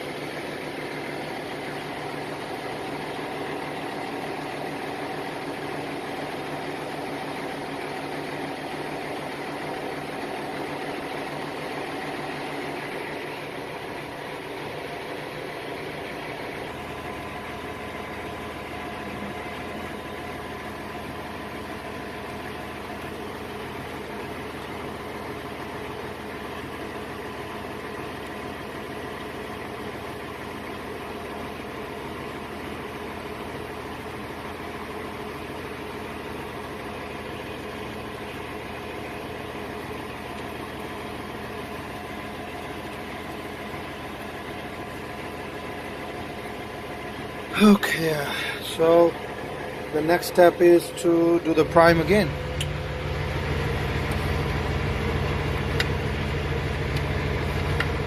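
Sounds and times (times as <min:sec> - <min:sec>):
diesel engine idling: 0:00.0 - 0:58.0.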